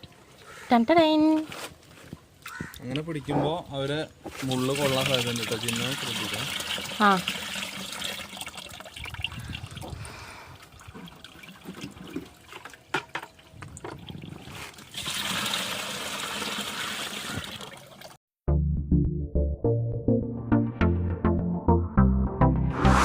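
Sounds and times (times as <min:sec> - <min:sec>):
water splashing and trickling: 0:00.0 - 0:18.2.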